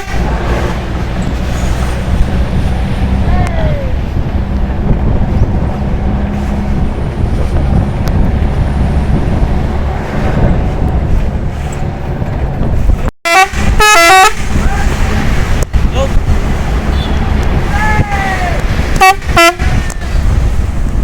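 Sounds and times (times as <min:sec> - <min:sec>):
bus engine and road noise: 0:00.0 - 0:21.0
multi-tone horn melody: 0:13.2 - 0:14.5, 0:19.0 - 0:20.0.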